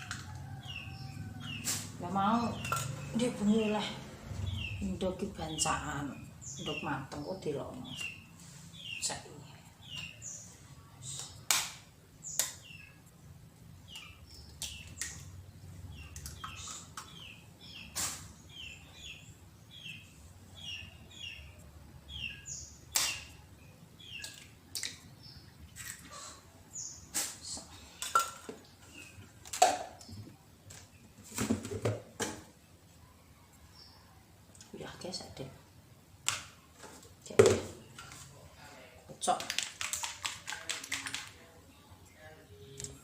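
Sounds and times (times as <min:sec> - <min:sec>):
small birds chirping: 0:00.2 - 0:11.5, 0:12.2 - 0:29.4.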